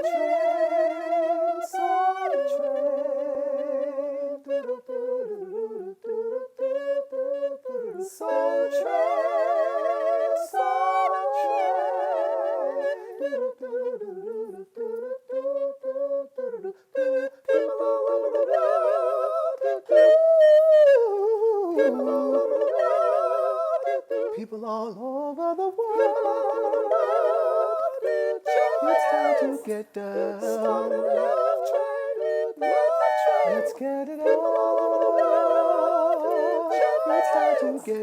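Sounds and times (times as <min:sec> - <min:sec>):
a cappella voices in harmony: 0:00.0 - 0:38.0.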